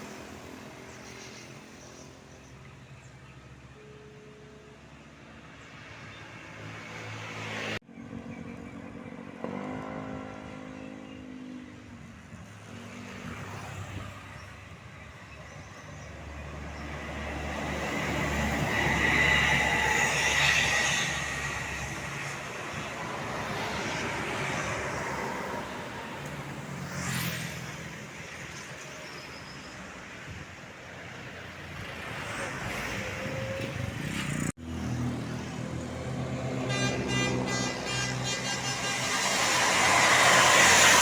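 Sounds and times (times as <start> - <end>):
vehicle passing: 5.8 - 14.7, 16.1 - 28.6, 31.2 - 41.0.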